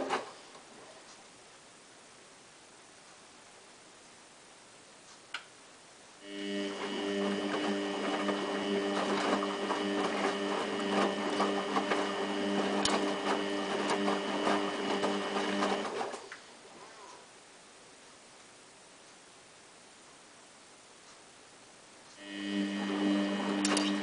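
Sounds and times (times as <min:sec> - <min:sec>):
washing machine drum motor humming: 0:06.2 - 0:16.3, 0:22.2 - 0:24.0.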